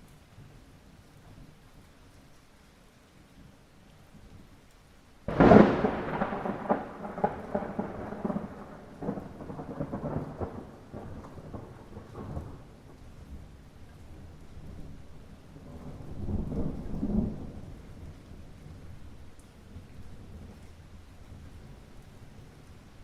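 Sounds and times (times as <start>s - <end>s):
light rain hiss: 0.0s - 23.0s
thunder clap and rumbles: 5.3s - 12.8s, 15.6s - 17.7s.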